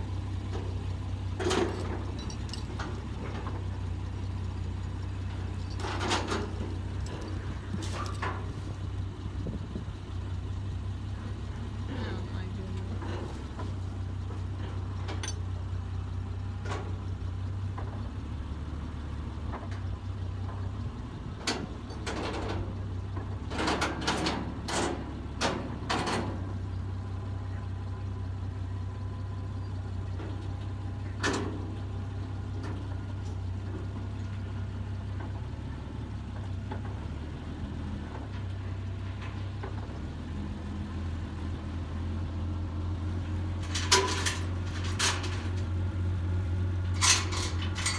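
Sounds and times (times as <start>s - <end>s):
forklift engine running: 0.0s - 47.9s
sharp metal clanks: 43.6s - 45.7s, 46.9s - 47.9s.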